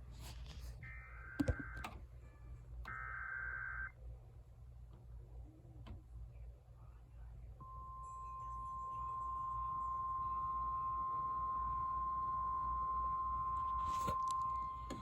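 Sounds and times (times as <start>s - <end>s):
low hum: 5.2s - 15.0s
steady high alarm beep: 7.6s - 15.0s.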